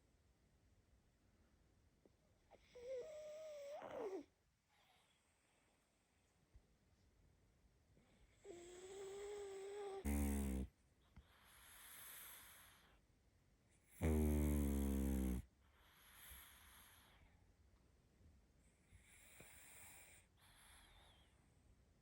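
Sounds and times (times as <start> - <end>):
dog snoring: 2.6 - 4.3, 8.4 - 10.7, 11.3 - 13.0, 13.9 - 17.2, 19.0 - 21.3.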